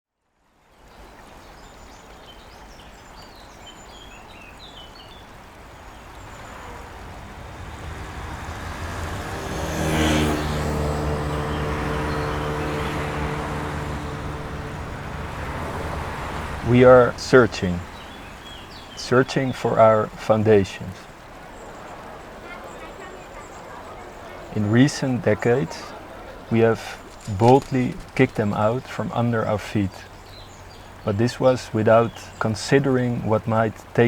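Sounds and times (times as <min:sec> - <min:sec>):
small birds chirping: 0:00.9 - 0:34.0
rising rush: 0:05.6 - 0:19.0
low drone of held tones: 0:05.9 - 0:18.1.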